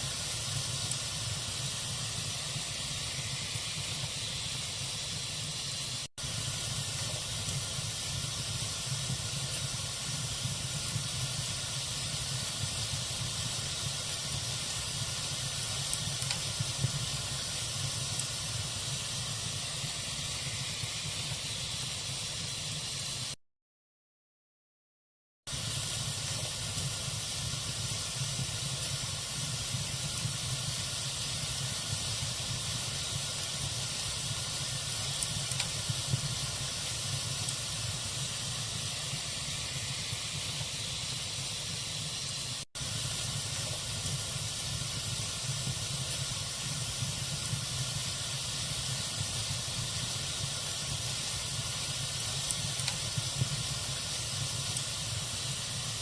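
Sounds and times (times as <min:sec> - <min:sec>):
wood fire hissing and crackling: 0:00.0 - 0:23.4, 0:25.5 - 0:56.0.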